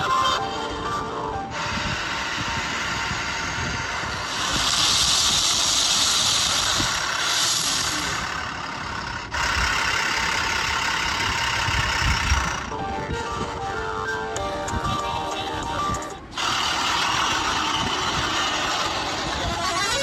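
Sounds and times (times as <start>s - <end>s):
vehicle engine with hiss: 1.5s - 12.7s, 15.4s - 19.7s.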